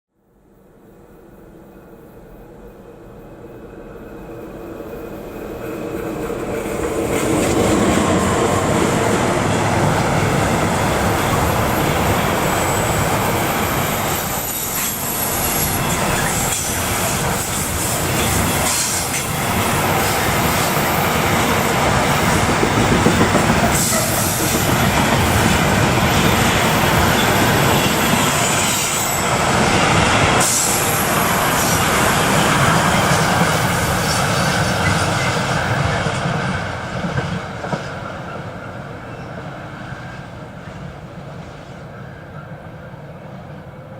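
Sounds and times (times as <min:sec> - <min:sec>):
freight train wheels clattering: 0:06.7 - 0:38.3
high wheel squeal: 0:11.2 - 0:19.2.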